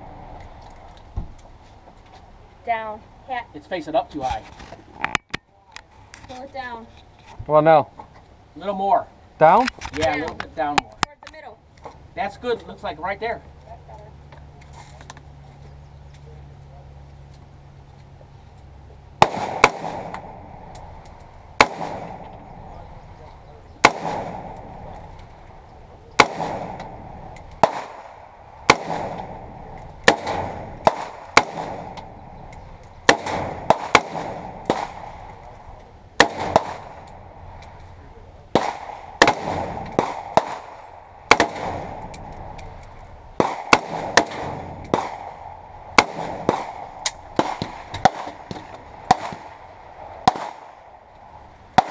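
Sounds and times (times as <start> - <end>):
rifle shots with echo: 19.2 - 23.2, 23.8 - 37.9, 38.5 - 51.1.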